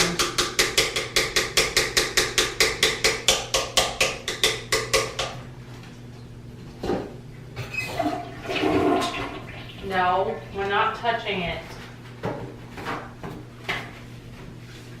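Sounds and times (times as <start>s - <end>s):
toilet bowl scrubbing: 7.7s - 11.2s.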